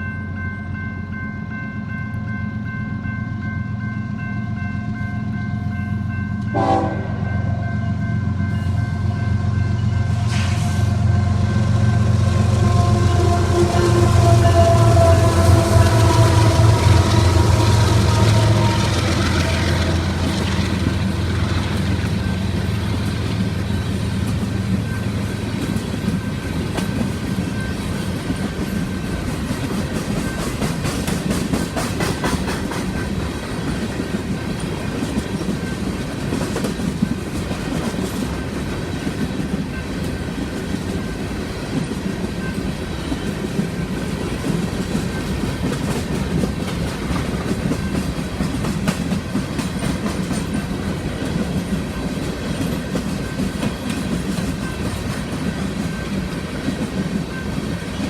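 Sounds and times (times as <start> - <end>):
diesel locomotive engine hum: 0.0 - 58.0
train horn: 6.4 - 8.0, 8.6 - 22.1
train cars clattering over rail joints: 41.8 - 58.0.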